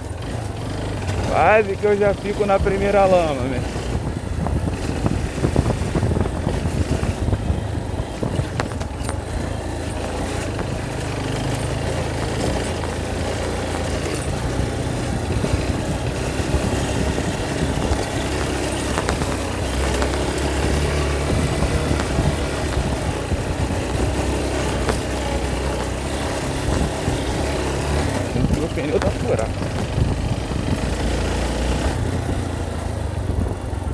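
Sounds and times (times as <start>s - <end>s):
motorcycle engine running: 0.0s - 33.9s
knocks and rattles: 0.4s - 32.5s.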